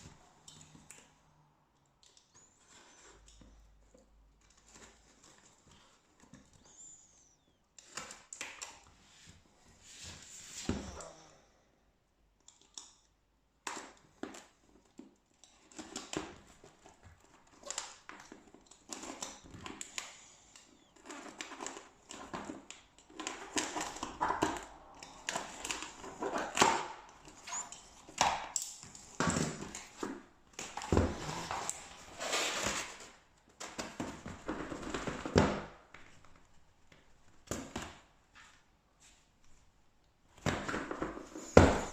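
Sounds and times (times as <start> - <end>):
packaging rustling and scraping: 2.4 - 7.1, 15.6 - 35.4.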